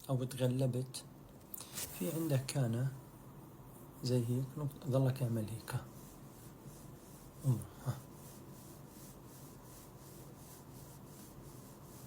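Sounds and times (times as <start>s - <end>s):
hand rubbing in quick strokes: 1.6s - 2.5s, 5.3s - 12.0s.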